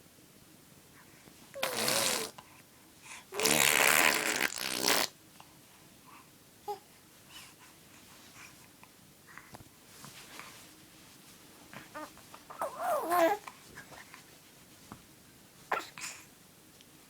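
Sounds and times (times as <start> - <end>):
baby blowing raspberries: 1.6 - 2.4, 3.3 - 5.1.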